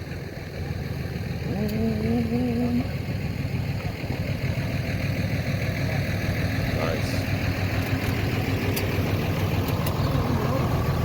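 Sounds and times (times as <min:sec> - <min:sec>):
car engine idling: 0:00.0 - 0:11.0
wavering hum: 0:01.0 - 0:04.8.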